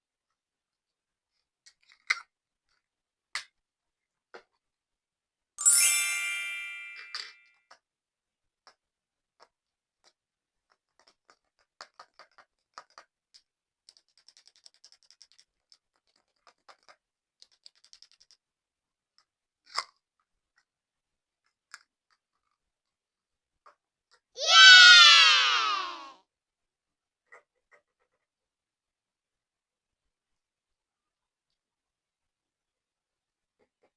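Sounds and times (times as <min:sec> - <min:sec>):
bright ringing ding: 0:05.6 - 0:07.4.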